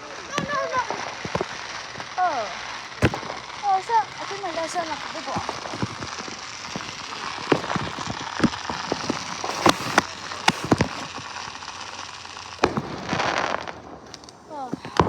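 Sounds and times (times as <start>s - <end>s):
firework bangs: 0.0s - 15.0s
firework hissing rush: 0.0s - 15.0s
fireworks crackling: 0.0s - 15.0s.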